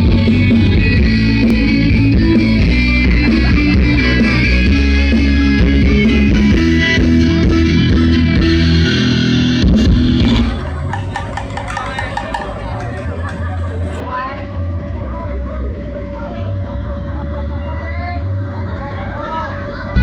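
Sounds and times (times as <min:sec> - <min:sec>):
electric guitar: 0:00.0 - 0:13.2
drums: 0:00.0 - 0:17.7
bass guitar: 0:00.0 - 0:20.0.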